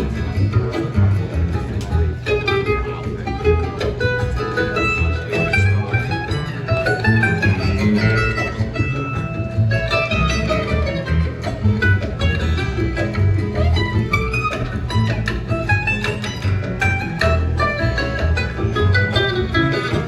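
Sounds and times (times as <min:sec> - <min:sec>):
plucked strings melody: 0:00.0 - 0:20.0
pulsing bass notes: 0:00.0 - 0:20.0.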